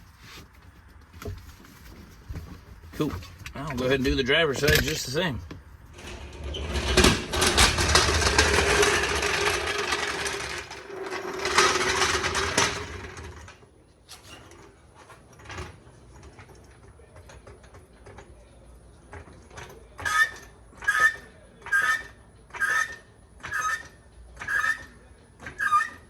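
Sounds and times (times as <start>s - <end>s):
handling noises: 0.0s - 20.0s.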